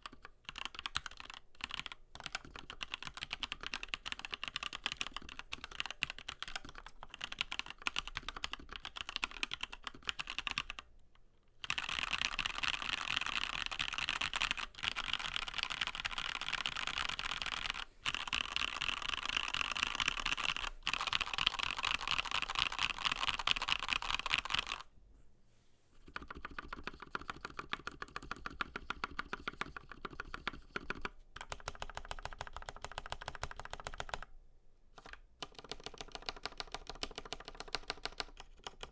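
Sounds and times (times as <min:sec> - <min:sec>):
mechanical keyboard typing: 0:00.0 - 0:10.9, 0:11.6 - 0:24.9, 0:26.0 - 0:34.3, 0:35.0 - 0:38.9.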